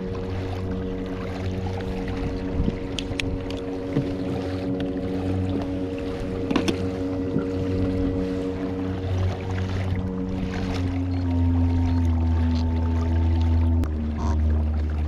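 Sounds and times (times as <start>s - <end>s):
water noise: 0.0s - 15.0s
wind: 0.0s - 15.0s.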